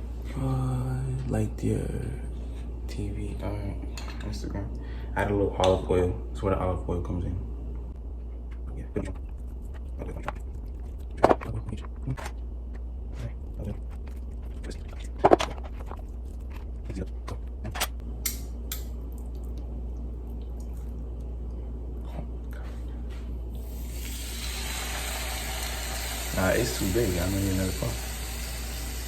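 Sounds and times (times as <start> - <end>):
low steady hum: 0.0 - 29.0
steady hiss: 23.6 - 29.0.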